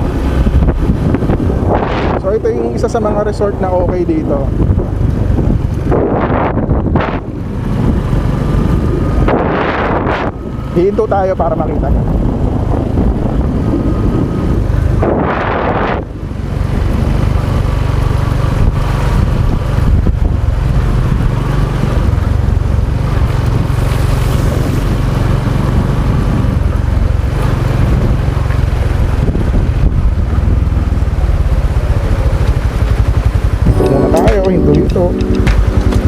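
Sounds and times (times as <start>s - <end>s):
wind buffeting microphone: 0.0s - 10.8s, 11.6s - 33.8s
motorcycle engine running: 30.0s - 33.8s.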